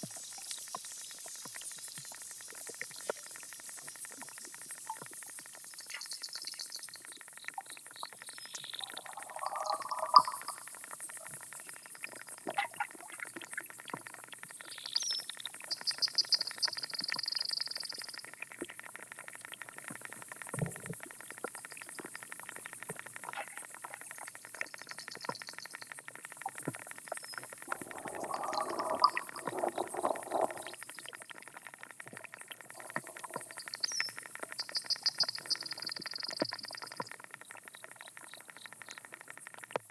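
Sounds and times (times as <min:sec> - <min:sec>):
insects buzzy trills underwater: 0:00.0 - 0:39.9
scattered clicks: 0:13.3 - 0:39.9.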